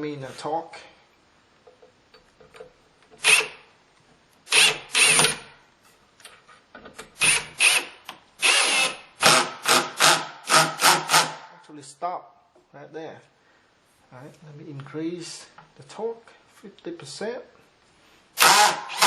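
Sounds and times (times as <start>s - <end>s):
drill clutch ratcheting: 3.2s - 3.6s, 4.5s - 5.5s, 7.2s - 11.3s
drill driving screw: 3.2s - 3.6s, 4.5s - 5.5s, 7.2s - 11.5s, 18.4s - 19.0s.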